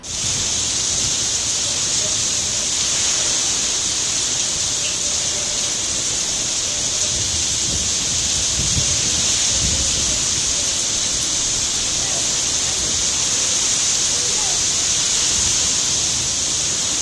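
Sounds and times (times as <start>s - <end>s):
heavy rain pouring: 0.0s - 17.0s
wind buffeting: 0.0s - 17.0s.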